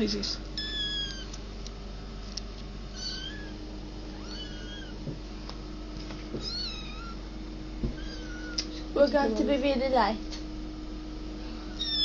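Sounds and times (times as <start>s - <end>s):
steady low hum: 0.0s - 12.0s
kittens mewing: 0.5s - 1.4s, 2.8s - 5.1s, 6.3s - 8.9s, 11.5s - 12.0s.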